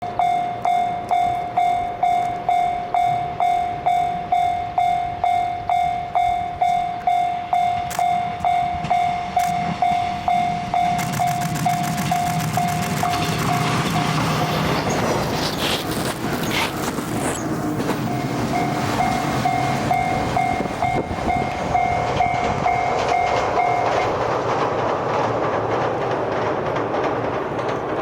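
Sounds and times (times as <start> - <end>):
level crossing warning bell: 0.0 - 15.3, 17.3 - 24.2
electric train rumble: 0.0 - 28.0.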